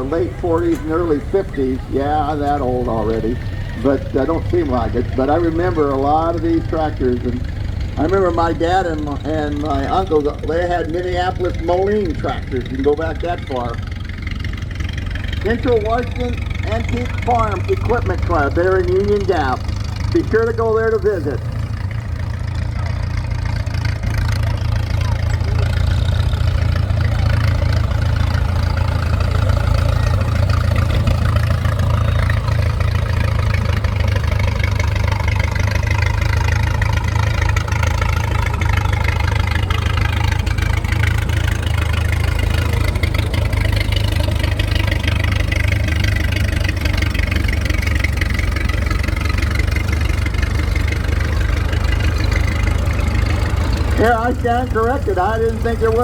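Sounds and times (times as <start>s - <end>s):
tractor engines rumbling: 0.0s - 56.0s.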